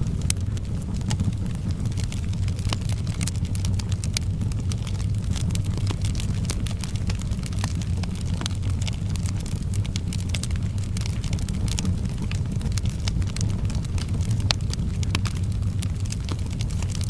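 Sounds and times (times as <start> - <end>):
low rumble: 0.0 - 17.0
wood fire crackling: 0.0 - 17.0.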